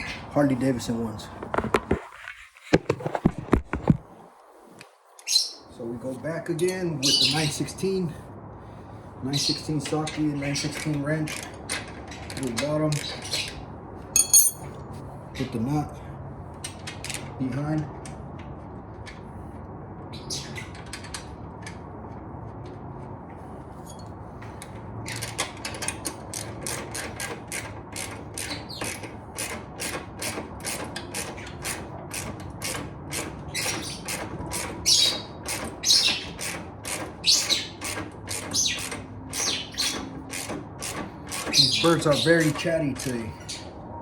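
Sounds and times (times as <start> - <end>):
birds squawking: 7.0 - 7.7, 34.8 - 36.5, 37.2 - 40.1, 41.4 - 43.8.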